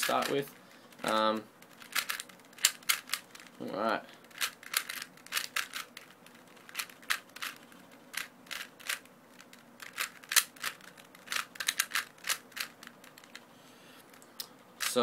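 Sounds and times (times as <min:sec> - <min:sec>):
puzzle cube clicking as turned: 0:00.9 - 0:03.6, 0:04.2 - 0:13.4.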